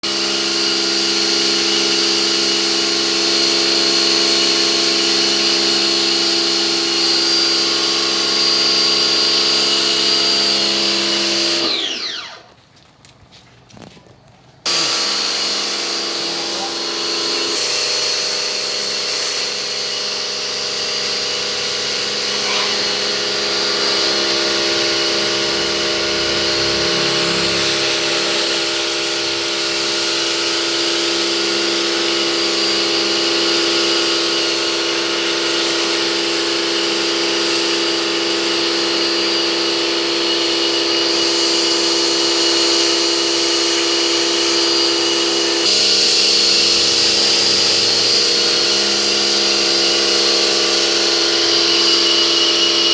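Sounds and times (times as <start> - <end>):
pressure washer pump whining: 0.0 - 12.6, 14.7 - 52.9
water jet hissing: 14.7 - 39.5, 43.4 - 52.9.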